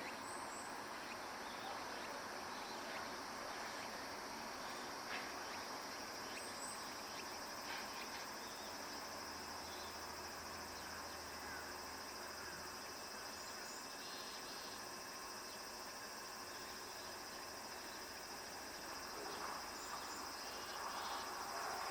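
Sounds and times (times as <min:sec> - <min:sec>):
insects trilling: 0:00.0 - 0:21.9.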